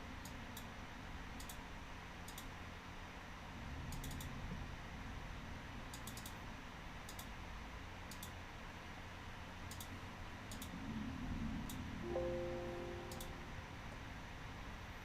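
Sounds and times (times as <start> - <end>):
low room hum: 0.0 - 15.0
computer mouse clicking: 1.4 - 1.6, 2.2 - 2.5, 3.9 - 4.4, 5.9 - 6.4, 7.1 - 7.3, 8.1 - 8.4, 9.7 - 10.8
musical notes: 12.0 - 13.9.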